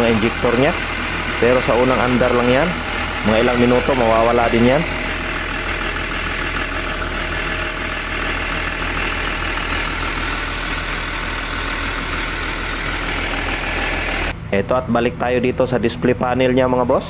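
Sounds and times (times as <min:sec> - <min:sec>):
diesel engine idling: 0:00.0 - 0:17.0.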